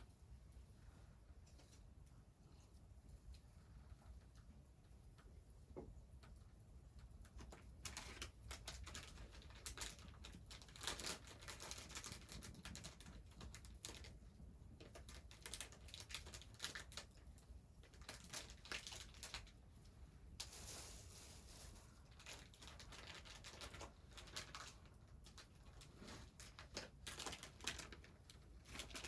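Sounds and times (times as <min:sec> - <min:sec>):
rustling and crackling clicks: 0:06.2 - 0:29.0.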